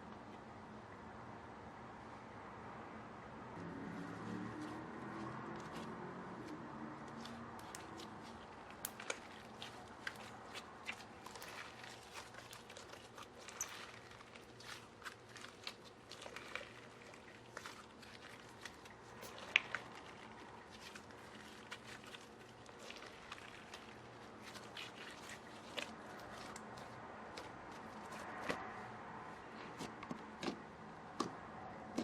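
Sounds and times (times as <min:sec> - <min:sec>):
slime squished by hand: 0:05.6 - 0:28.6.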